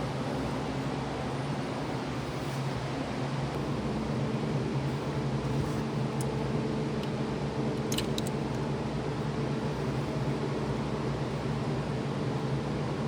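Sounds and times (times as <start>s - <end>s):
mechanical hum: 0.0s - 13.0s.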